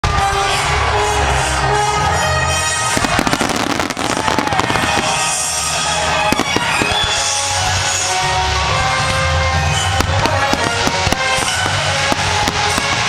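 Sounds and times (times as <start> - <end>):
music: 0.0 - 13.0
fireworks bursting and crackling: 2.6 - 13.0.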